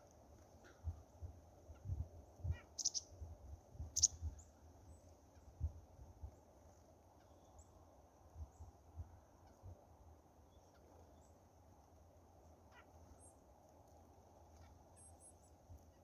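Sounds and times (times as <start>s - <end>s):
small bird chirping: 1.7s - 5.6s.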